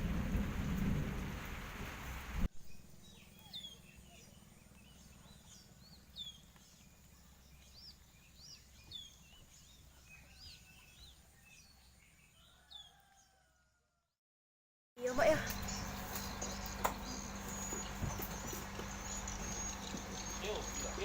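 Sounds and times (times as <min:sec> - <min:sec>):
heavy rain: 0:00.0 - 0:02.5.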